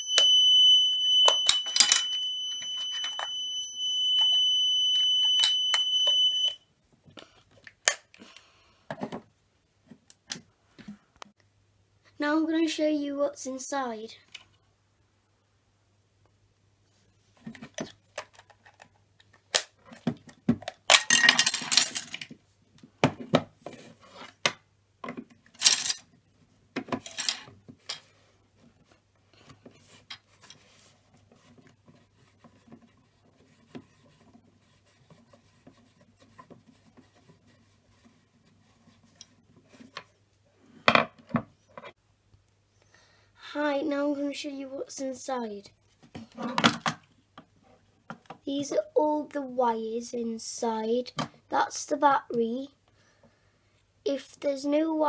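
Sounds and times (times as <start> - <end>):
plastic parts clicking and rattling: 1.3 - 2.2, 17.4 - 22.4, 24.2 - 26.2, 26.8 - 28.1.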